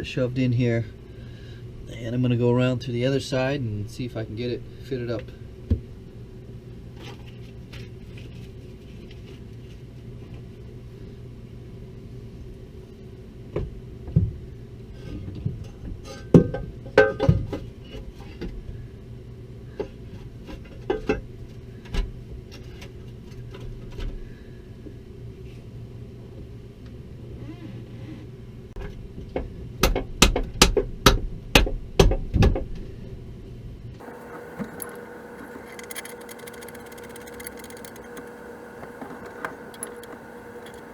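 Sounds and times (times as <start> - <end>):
steady low hum: 34.0 - 40.9.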